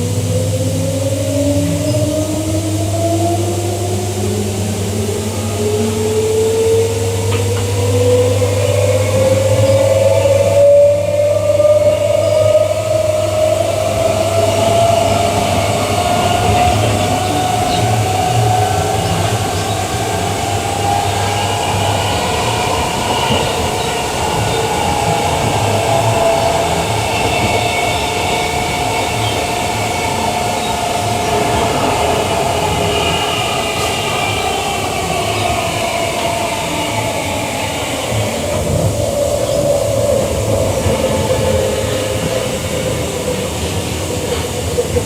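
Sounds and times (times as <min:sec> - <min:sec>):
electric train rumble and whine: 0:00.0 - 0:45.0.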